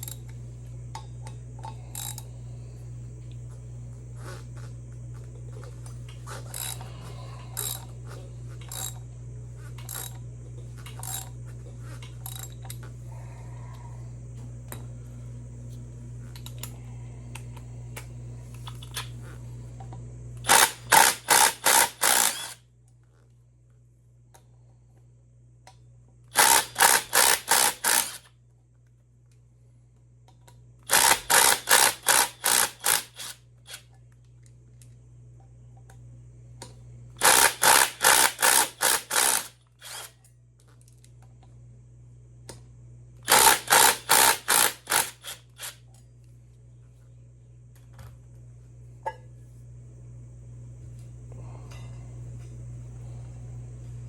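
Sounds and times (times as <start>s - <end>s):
steady low hum: 0.0s - 54.0s
impact driver pulsing: 20.4s - 22.6s, 26.3s - 28.3s, 30.9s - 33.8s, 37.2s - 40.1s, 43.2s - 45.8s.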